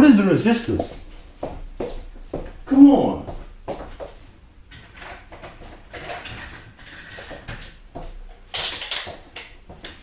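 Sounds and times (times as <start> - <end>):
small tools clicking and clattering: 8.5 - 10.0.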